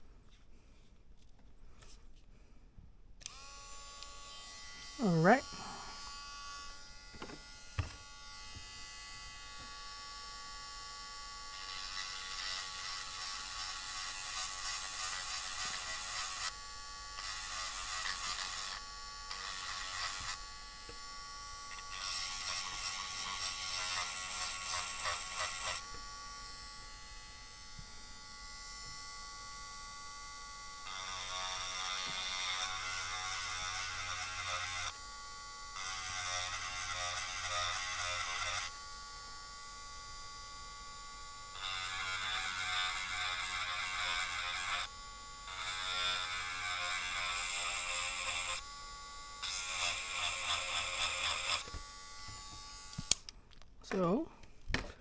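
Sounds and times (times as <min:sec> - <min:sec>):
rotary tool grinding: 0:03.2 - 0:09.6, 0:11.5 - 0:16.6, 0:17.2 - 0:20.5, 0:21.7 - 0:26.1, 0:30.8 - 0:35.0, 0:35.8 - 0:38.8, 0:41.5 - 0:48.7, 0:49.4 - 0:53.3.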